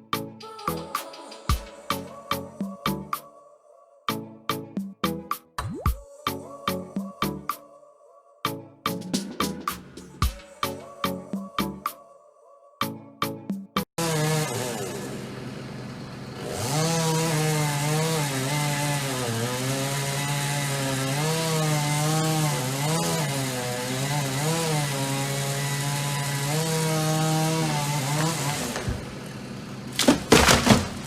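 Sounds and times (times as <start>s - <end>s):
chainsaw cutting wood: 14.0s - 31.0s.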